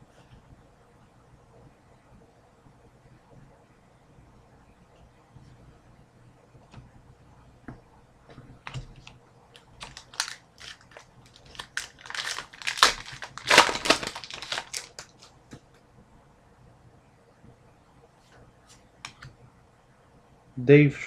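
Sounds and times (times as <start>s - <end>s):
wrapper tearing and crinkling: 9.6s - 15.3s.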